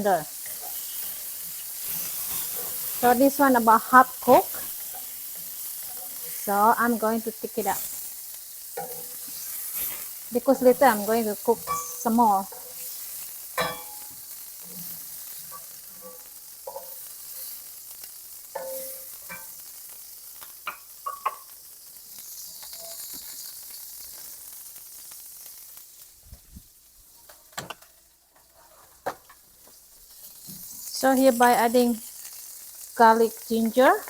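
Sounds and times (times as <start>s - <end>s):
utensil scraping against wok: 0.0s - 20.1s, 20.7s - 24.6s, 28.4s - 32.6s
shrimp sizzling in hot oil: 0.0s - 34.0s.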